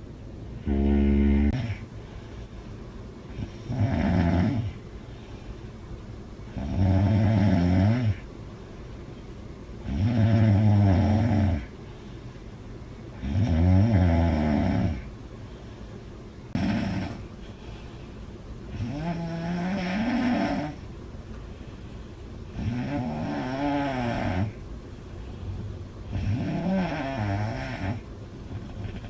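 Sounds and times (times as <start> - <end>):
quiet breathing: 0.0 - 29.0
woman snoring loudly: 0.6 - 1.8, 3.4 - 4.8, 6.6 - 8.2, 9.8 - 11.7, 13.2 - 15.0, 16.6 - 17.2, 18.8 - 20.8, 22.6 - 24.6, 26.1 - 28.0.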